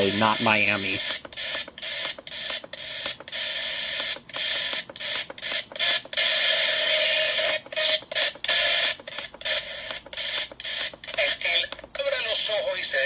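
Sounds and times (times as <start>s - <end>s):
radio static hiss: 0.0s - 13.0s
regular clicks: 0.4s - 6.2s, 7.4s - 12.0s.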